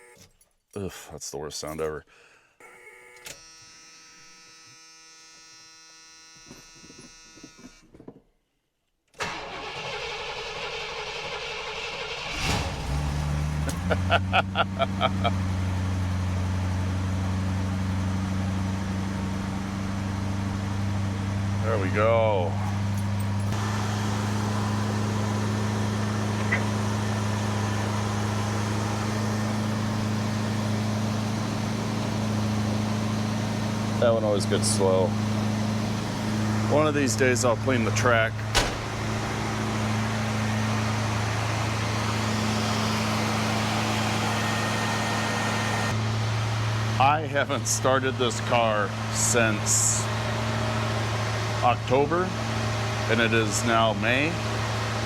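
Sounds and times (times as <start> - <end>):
electric warning buzzer: 0.0 - 0.3, 2.6 - 7.8
car engine running: 10.4 - 55.0.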